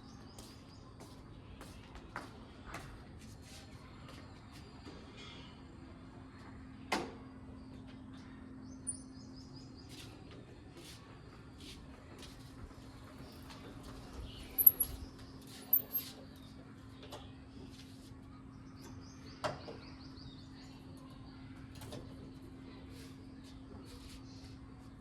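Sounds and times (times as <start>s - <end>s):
birds chirping: 13.2s - 16.0s.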